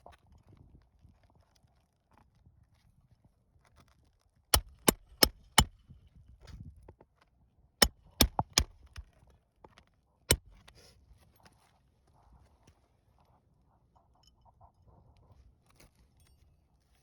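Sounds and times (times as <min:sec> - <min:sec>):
hammer striking nails: 0:04.6 - 0:05.8, 0:07.8 - 0:09.0, 0:10.3 - 0:10.6.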